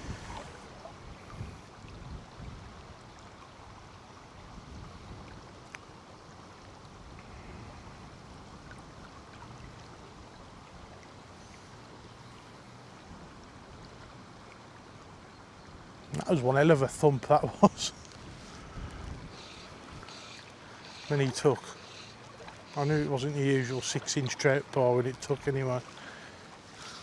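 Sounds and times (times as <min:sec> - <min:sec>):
wind buffeting microphone: 0:00.0 - 0:03.0, 0:04.4 - 0:05.6, 0:18.1 - 0:20.1
river water rushing: 0:05.5 - 0:27.0.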